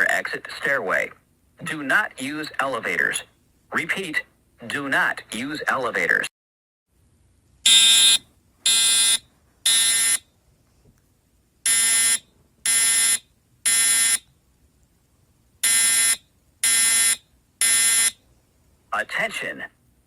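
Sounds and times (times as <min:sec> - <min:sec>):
fire alarm evacuation tone blasts: 0:07.7 - 0:10.2, 0:11.7 - 0:14.3, 0:15.6 - 0:18.2.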